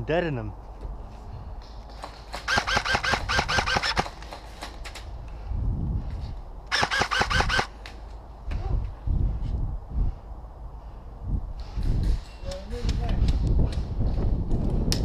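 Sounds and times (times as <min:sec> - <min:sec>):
airsoft gun full-auto bursts: 0:02.4 - 0:04.2, 0:06.7 - 0:07.7.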